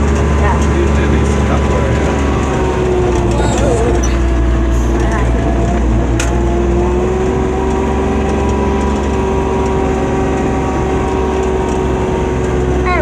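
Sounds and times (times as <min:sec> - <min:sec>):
atv engine running: 0:00.0 - 0:13.0.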